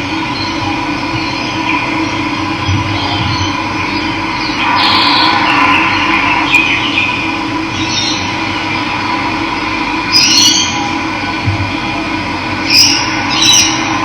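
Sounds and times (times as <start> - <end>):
birds chirping: 1.2 - 8.8, 12.6 - 14.0.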